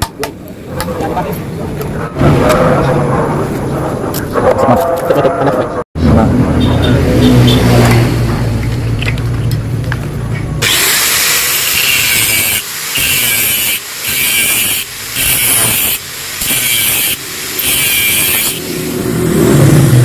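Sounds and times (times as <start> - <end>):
low rumble: 1.5 - 4.5
power tool boring metal: 10.6 - 18.9.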